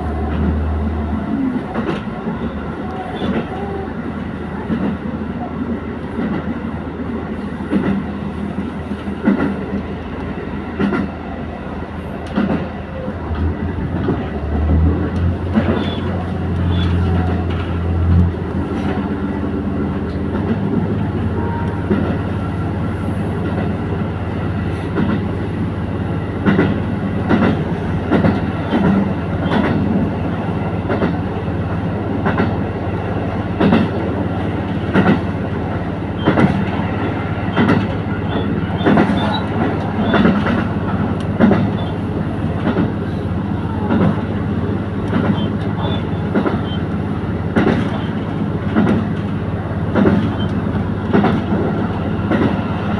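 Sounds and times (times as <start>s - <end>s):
train engine hum: 0.0s - 52.9s
wheels clicking over rail joints: 26.4s - 30.1s, 36.1s - 43.0s, 45.0s - 52.6s.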